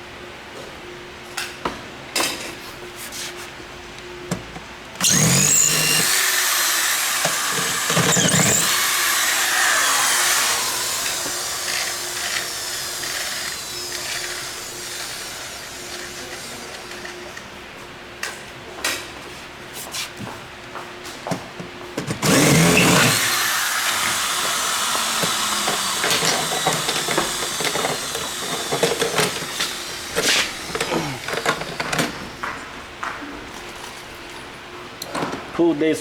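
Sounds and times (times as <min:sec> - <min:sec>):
power drill whining: 0:05.0 - 0:17.3, 0:22.1 - 0:32.6.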